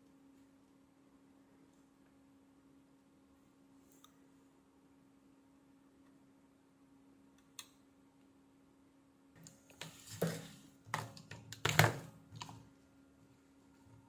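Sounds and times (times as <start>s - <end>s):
low electrical hum: 0.0s - 14.0s.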